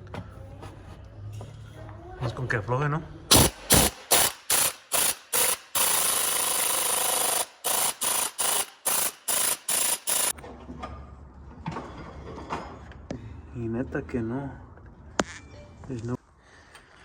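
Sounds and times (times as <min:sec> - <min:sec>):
impact wrench hammering: 0:03.3 - 0:10.3.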